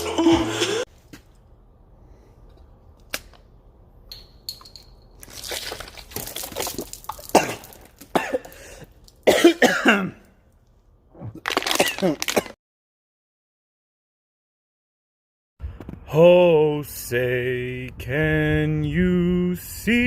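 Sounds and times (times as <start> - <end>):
person coughing: 0.0 - 0.9, 7.2 - 10.3, 11.6 - 12.6.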